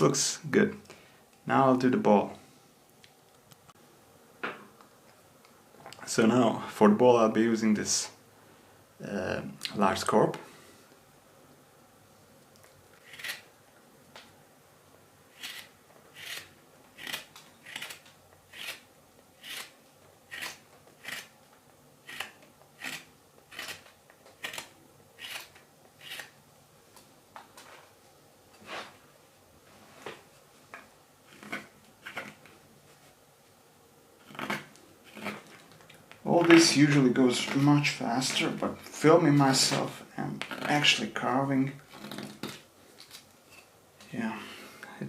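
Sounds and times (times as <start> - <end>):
hook knife cutting wood: 15.4 - 18.8, 19.4 - 19.7, 20.3 - 21.3, 22.1 - 26.4, 31.3 - 32.4.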